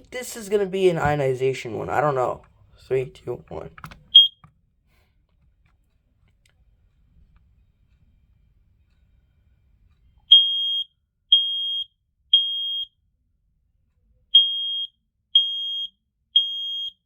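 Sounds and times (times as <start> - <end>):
smoke alarm beeping: 4.1 - 4.4, 10.3 - 12.9, 14.4 - 17.0.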